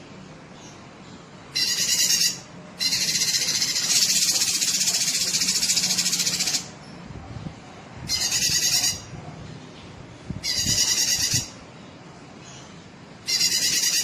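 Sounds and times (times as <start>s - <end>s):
bird singing buzzing trills: 1.6s - 6.6s.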